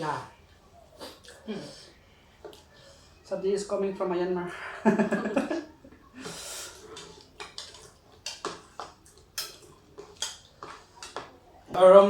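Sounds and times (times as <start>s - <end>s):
spoons clinking on plates: 6.9s - 11.4s.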